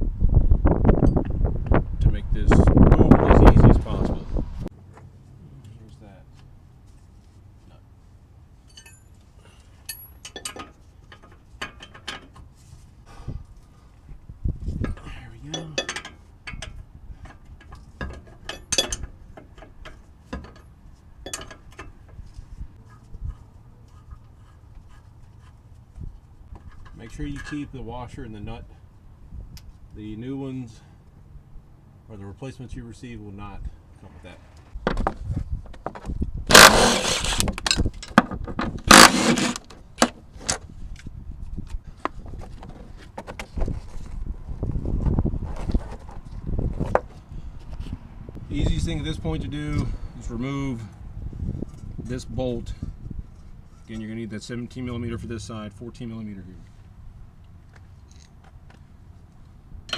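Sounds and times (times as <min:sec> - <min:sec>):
tools and metal parts clinking: 0:08.6 - 0:12.4, 0:14.9 - 0:16.8, 0:17.6 - 0:22.0, 0:36.5 - 0:38.3
impact wrench bursts: 0:36.5 - 0:37.7, 0:38.8 - 0:39.7.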